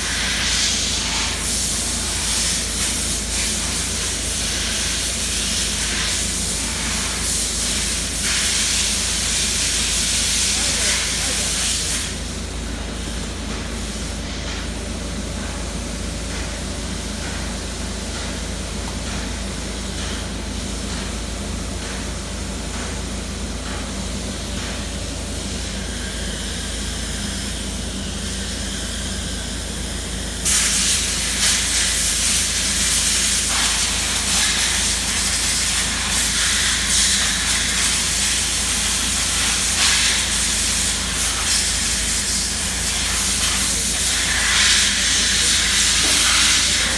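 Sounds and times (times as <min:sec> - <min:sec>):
car road noise hiss: 0:25.4 - 0:46.9.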